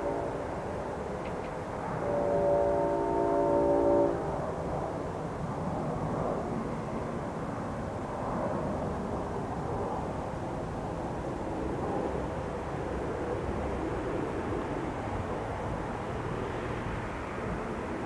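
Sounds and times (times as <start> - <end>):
train horn chord: 0.0 - 0.7, 1.8 - 4.4.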